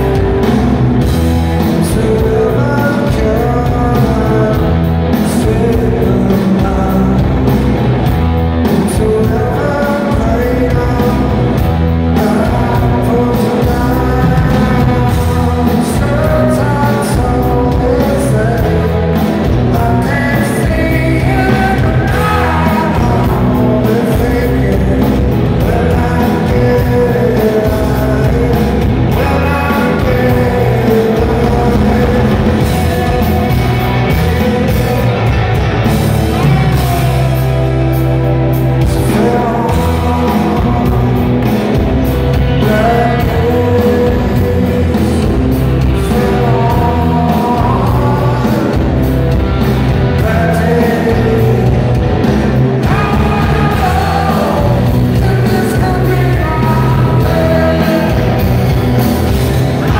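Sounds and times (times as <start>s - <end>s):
lead singer singing: 0.0s - 59.9s
rock band playing live: 0.0s - 59.9s.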